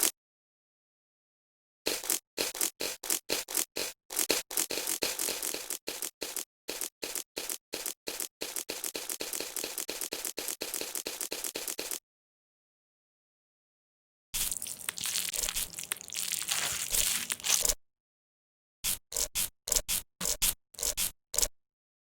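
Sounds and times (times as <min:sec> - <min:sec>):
slime squishing: 0:14.4 - 0:17.8.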